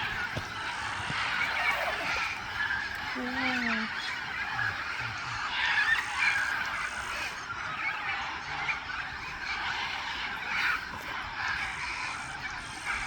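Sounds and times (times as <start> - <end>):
macaws and parrots squawking: 0.0 - 13.0.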